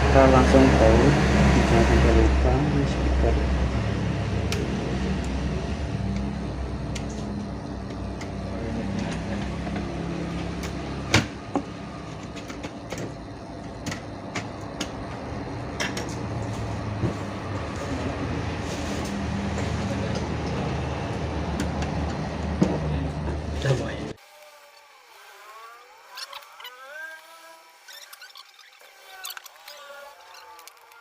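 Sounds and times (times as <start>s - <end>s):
steady low rumble: 0.2s - 9.6s.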